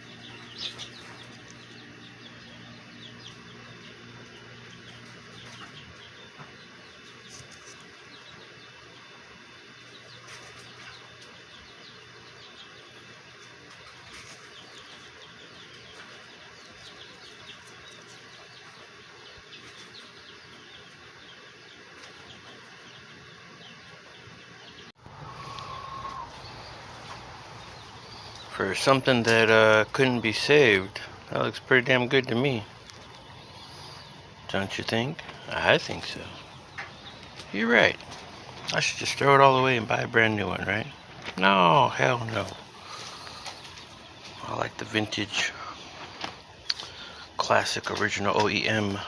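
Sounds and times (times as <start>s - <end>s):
birds chirping and calling: 0.0s - 49.0s
steady background hiss: 22.7s - 49.0s.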